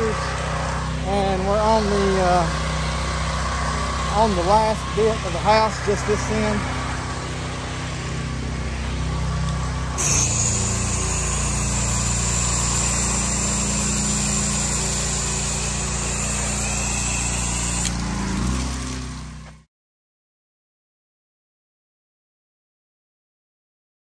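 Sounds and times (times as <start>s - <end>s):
small engine running: 0.0s - 19.7s
pressure washer spray hissing: 10.0s - 18.0s.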